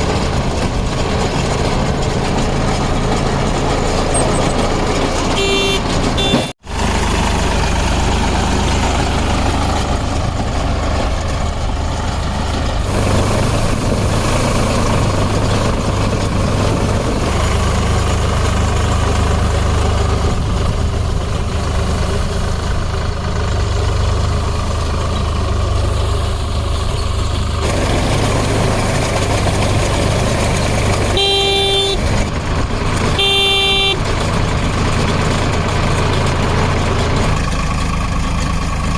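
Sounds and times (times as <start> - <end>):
tractor engine running under load: 0.0 - 38.9
short horn toots: 5.4 - 6.5, 31.1 - 32.1, 33.2 - 34.0.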